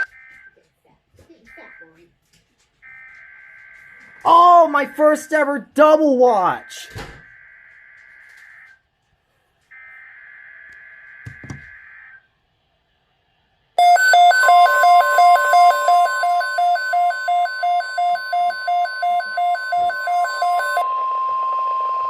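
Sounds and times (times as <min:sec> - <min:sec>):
electronic alarm beeping: 0:00.0 - 0:00.6, 0:13.8 - 0:22.0
steady warning alarm tone: 0:00.0 - 0:00.6, 0:01.4 - 0:02.2, 0:02.8 - 0:05.5, 0:06.3 - 0:08.9, 0:09.7 - 0:12.2, 0:13.8 - 0:22.0.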